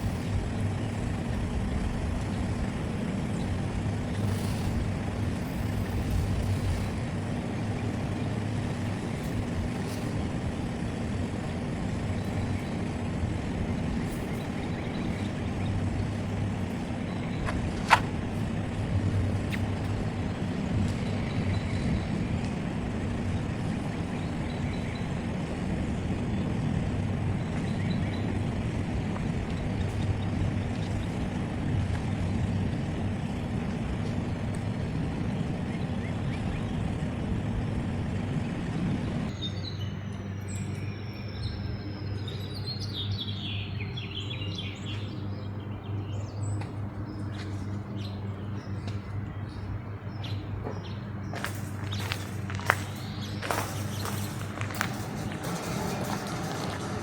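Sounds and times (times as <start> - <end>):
vehicle engine rumble: 0.0 - 57.0.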